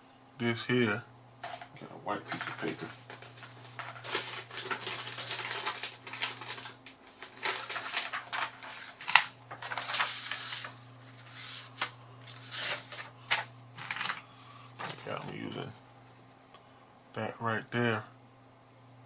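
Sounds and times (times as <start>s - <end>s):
paper rustling and crinkling: 1.4s - 16.4s.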